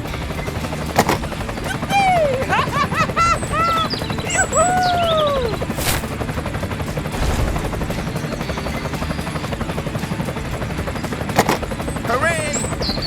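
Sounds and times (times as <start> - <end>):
toy vehicle motor chugging: 0.0 - 13.0
sharp click: 11.4 - 11.7.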